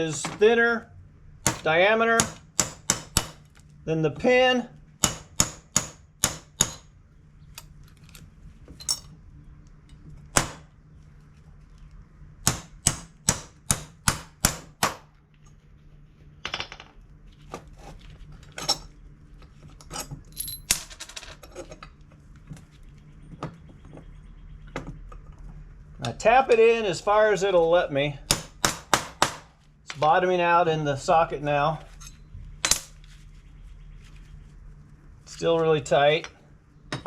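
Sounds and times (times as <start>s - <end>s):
hammer striking metal bolt: 1.5s - 3.4s, 5.0s - 6.9s
light metallic taps and clinks: 7.6s - 9.1s.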